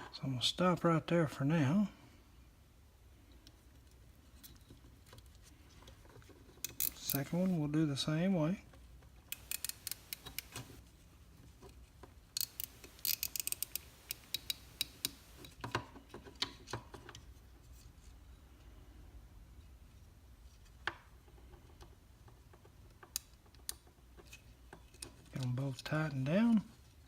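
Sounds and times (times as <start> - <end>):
cable tie ratchet clicks: 6.6 - 7.5, 9.3 - 10.8, 12.4 - 15.6.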